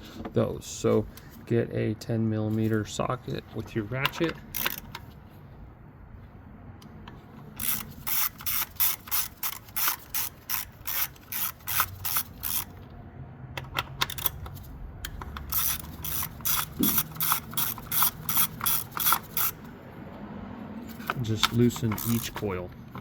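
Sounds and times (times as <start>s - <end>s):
hand ratchet clicking: 4.0s - 5.1s, 7.5s - 12.9s, 13.6s - 19.7s, 20.9s - 23.0s.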